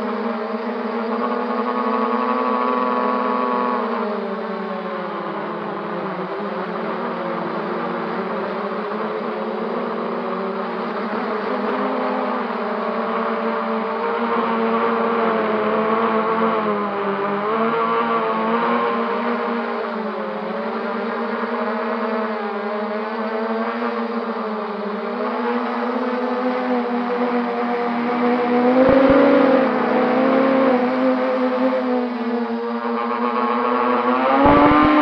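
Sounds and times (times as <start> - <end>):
drone propellers whining: 28.4 - 35.0.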